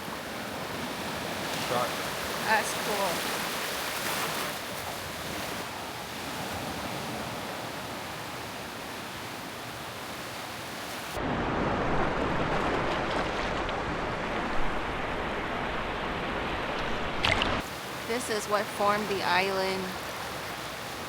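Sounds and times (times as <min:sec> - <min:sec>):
waves washing onto rocky shore: 0:00.0 - 0:11.2
wind rumble on microphone: 0:11.2 - 0:17.6.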